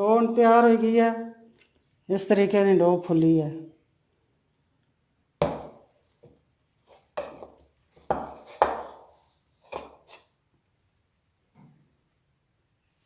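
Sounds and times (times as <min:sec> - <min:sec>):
kitchen knocks and thumps: 0:05.4 - 0:05.9, 0:07.2 - 0:09.1.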